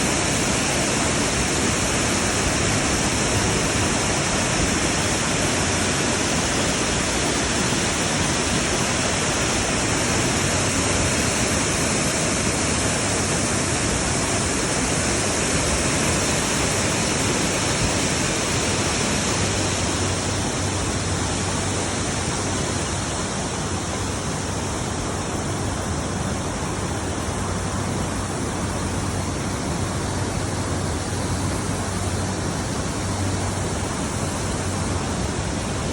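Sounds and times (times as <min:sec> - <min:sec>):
stream water flowing: 0:00.0 - 0:35.9.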